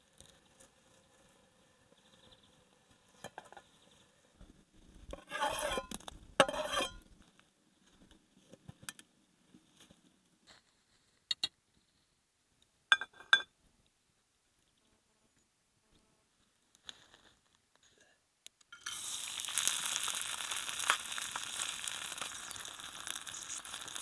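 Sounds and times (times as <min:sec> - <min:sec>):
tableware scraping and rustling: 0:05.2 - 0:07.0
tableware clinking: 0:06.4 - 0:07.0, 0:12.9 - 0:13.5.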